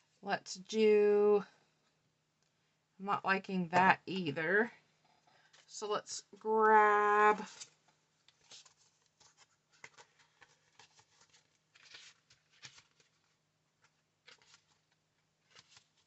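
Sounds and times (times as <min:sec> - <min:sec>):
paper rustling and tapping: 0:07.4 - 0:16.0.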